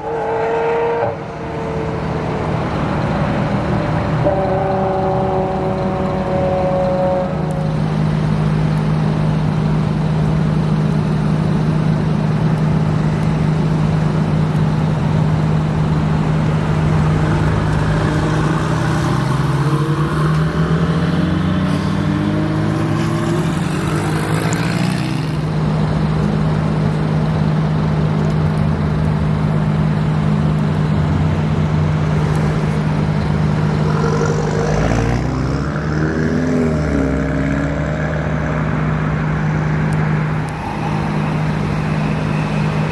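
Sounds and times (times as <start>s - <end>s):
low engine drone: 0.0s - 42.9s
sports cars accelerating hard: 16.4s - 25.6s, 32.0s - 42.9s.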